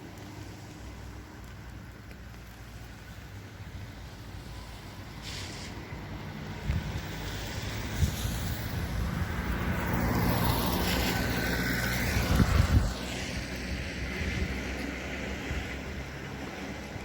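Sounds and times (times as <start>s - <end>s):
motor vehicle passing: 5.2s - 16.8s.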